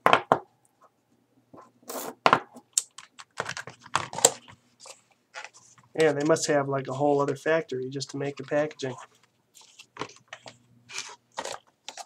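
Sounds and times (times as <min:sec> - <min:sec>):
packaging clicks and rustles: 0:02.8 - 0:06.4, 0:08.0 - 0:12.0.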